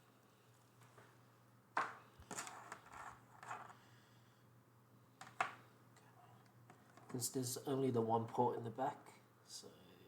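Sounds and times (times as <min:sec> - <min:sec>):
rustling and scraping: 0:02.2 - 0:03.8.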